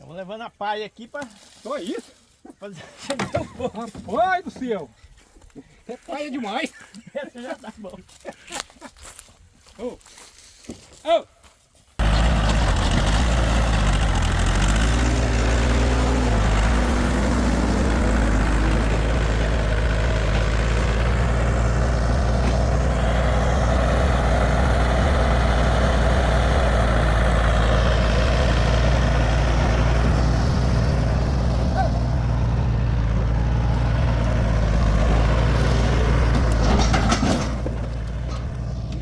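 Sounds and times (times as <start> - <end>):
tractor engine running: 12.0 - 39.0.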